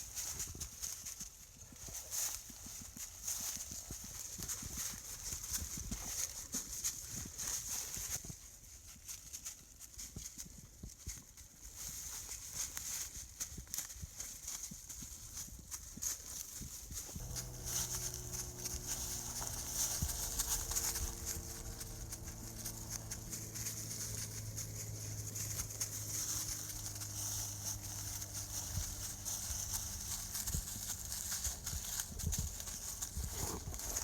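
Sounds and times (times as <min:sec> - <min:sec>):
rustling in undergrowth: 0:00.0 - 0:34.0
steady low hum: 0:17.1 - 0:34.0.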